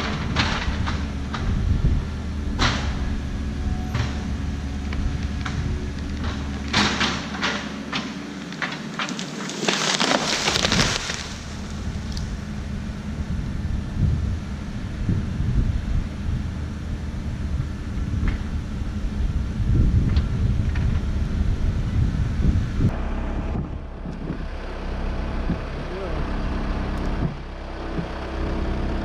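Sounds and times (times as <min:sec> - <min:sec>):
wood cracking and snapping: 0:00.0 - 0:03.2, 0:03.9 - 0:12.6
branches crashing and splintering: 0:00.0 - 0:12.8
backhoe engine under load: 0:00.0 - 0:29.0.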